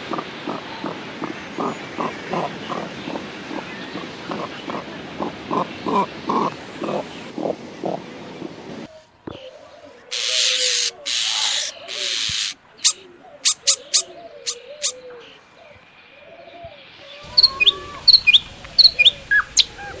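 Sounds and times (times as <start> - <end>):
low bird cooing: 0.0 - 20.0
bird hissing screeches: 10.1 - 12.6
bird sharp clicks: 12.3 - 15.0
high falling bird chirps: 17.1 - 20.0.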